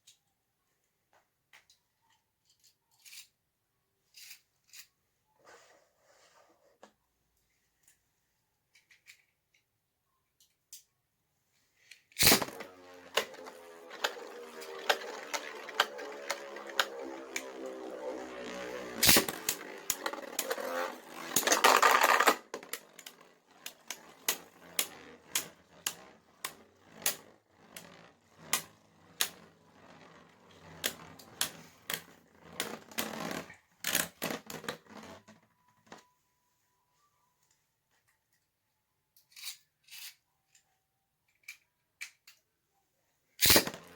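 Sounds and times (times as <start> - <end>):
spinning tops clacking together: 12.2 - 35.2, 43.4 - 43.9
spinning tops whirring: 12.2 - 35.4, 43.4 - 43.9.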